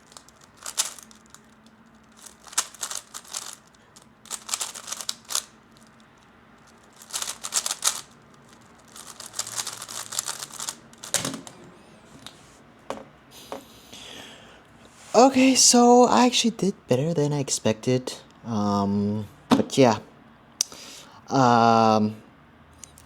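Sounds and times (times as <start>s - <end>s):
puzzle cube plastic clicking: 0.0s - 5.5s, 6.7s - 11.4s.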